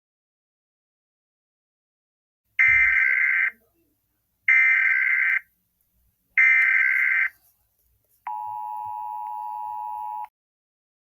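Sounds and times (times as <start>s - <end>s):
steady warning alarm tone: 2.6s - 3.6s, 6.4s - 7.3s.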